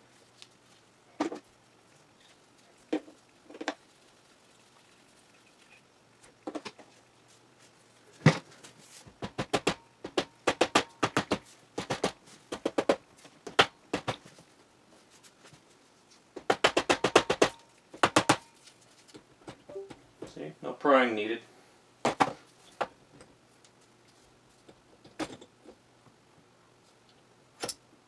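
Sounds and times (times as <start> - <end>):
hand tools clicking and tapping: 9.2 - 14.3, 16.4 - 18.5.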